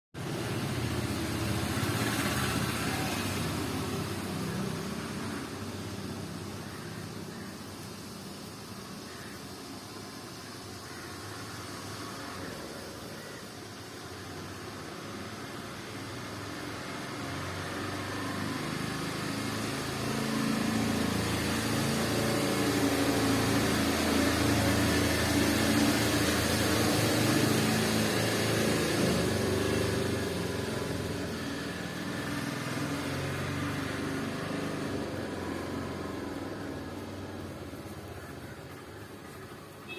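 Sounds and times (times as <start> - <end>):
small engine running: 10.4 - 39.8.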